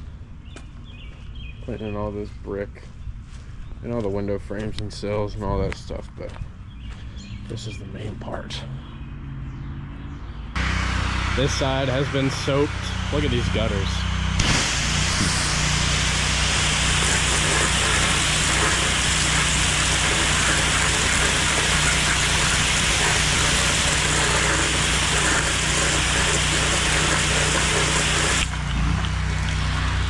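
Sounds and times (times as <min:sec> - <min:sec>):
engine running: 0:10.5 - 0:30.0
pressure washer water jet hissing: 0:10.6 - 0:30.0.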